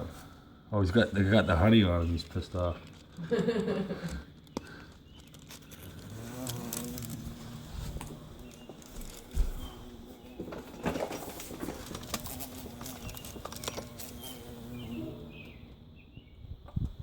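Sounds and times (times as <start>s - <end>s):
bumblebee buzzing: 5.5s - 16.3s.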